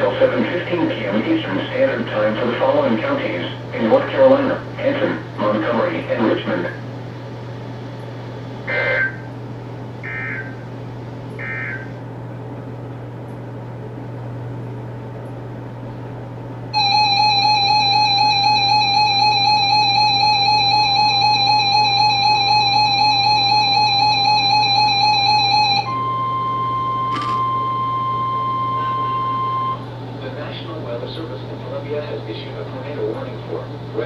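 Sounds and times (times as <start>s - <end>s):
steady radio hum: 0.0s - 12.1s, 25.8s - 34.0s
harsh two-tone alert: 16.8s - 29.8s.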